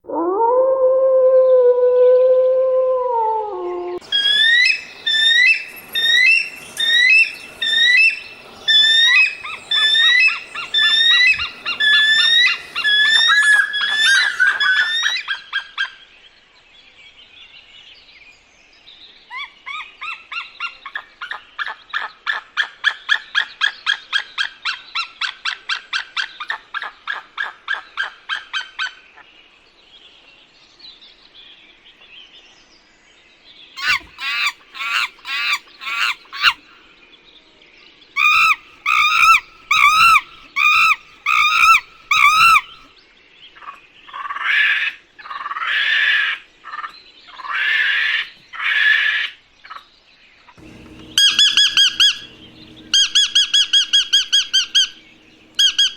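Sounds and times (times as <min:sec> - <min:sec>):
bird calls: 0:03.6 - 0:16.0, 0:33.8 - 0:36.8, 0:38.2 - 0:42.9, 0:50.5 - 0:55.9.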